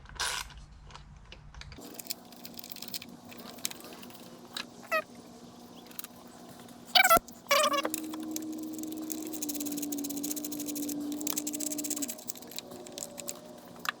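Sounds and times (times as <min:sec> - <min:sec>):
steady hum: 0:01.8 - 0:14.0
fast fine ticking: 0:07.0 - 0:14.0.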